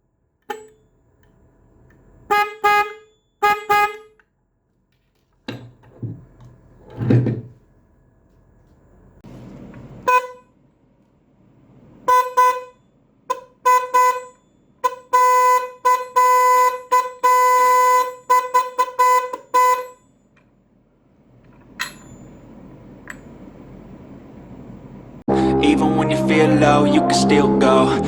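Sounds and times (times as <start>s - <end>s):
electric horn beeping: 2.3s - 4.2s, 10.0s - 10.6s, 12.0s - 20.1s.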